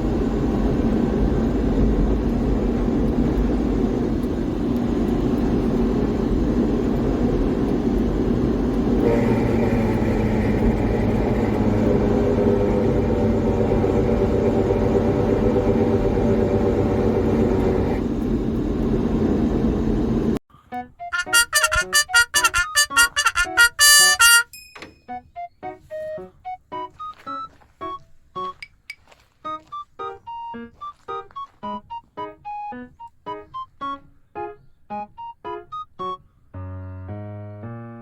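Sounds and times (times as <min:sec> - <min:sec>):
truck engine rumbling: 0:00.0 - 0:20.4, 0:21.2 - 0:24.4
whining tone: 0:00.0 - 0:20.4, 0:21.2 - 0:24.4.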